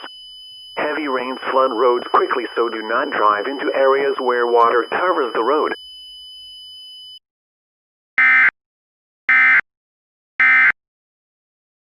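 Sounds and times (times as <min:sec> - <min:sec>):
digital data tone bursts: 0:00.8 - 0:05.8.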